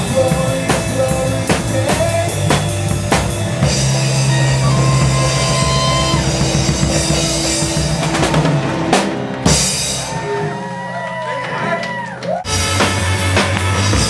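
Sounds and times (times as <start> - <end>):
band playing rock music: 0.0 - 14.0
heavy drum hits: 1.5 - 10.2.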